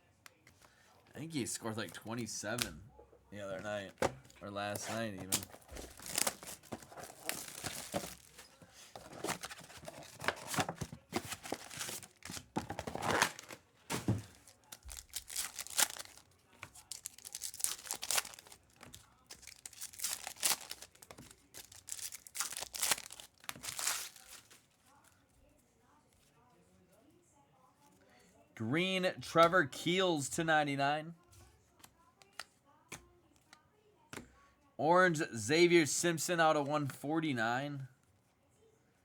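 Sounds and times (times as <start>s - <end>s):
cards rustling: 3.4s - 25.2s
wrappers tearing and crinkling: 4.7s - 25.2s.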